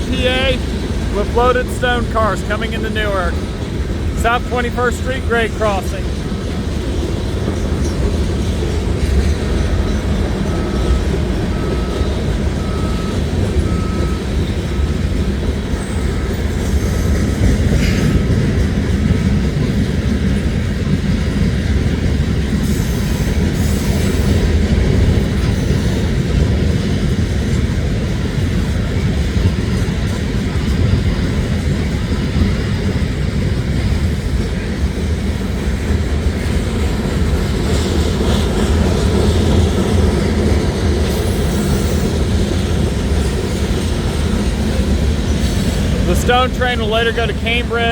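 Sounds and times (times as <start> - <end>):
crossing bell dinging: 0.0 - 19.2, 37.2 - 47.9
train wheels rumbling on rail: 0.0 - 47.9.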